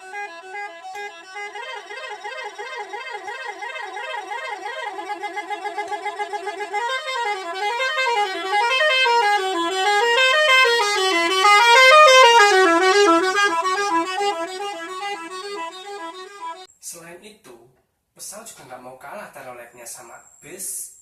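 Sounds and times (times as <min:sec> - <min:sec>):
multi-tone vehicle horn melody: 0:00.0 - 0:16.7.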